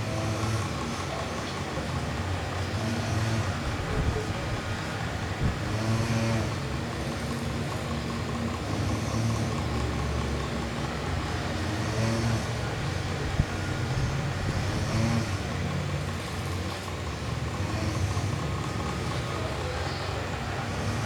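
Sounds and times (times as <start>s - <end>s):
electric fan humming: 0.0s - 21.0s.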